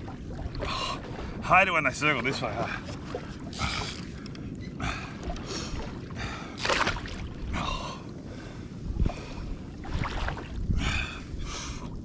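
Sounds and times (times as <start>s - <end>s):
water sloshing and splashing: 0.0s - 12.0s
wind rumble on microphone: 0.0s - 12.0s.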